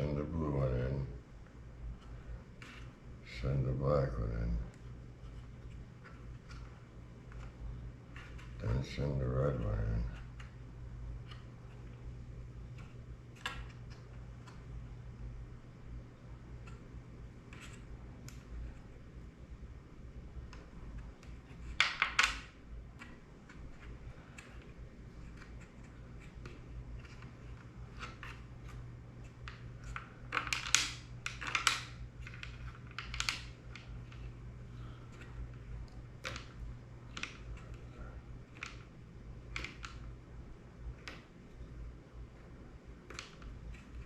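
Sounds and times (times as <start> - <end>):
steady low hum: 0.0 - 44.0
plastic parts clicking and tapping: 29.4 - 34.3, 36.2 - 37.9, 38.5 - 38.9, 39.5 - 40.1.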